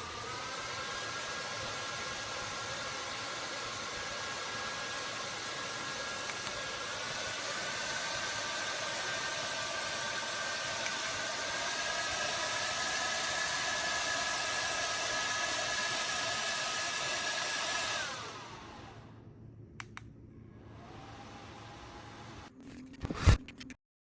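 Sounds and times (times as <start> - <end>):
handheld fan motor whine: 0.0 - 19.2, 20.5 - 23.6
fan switch clicks: 19.8 - 20.1.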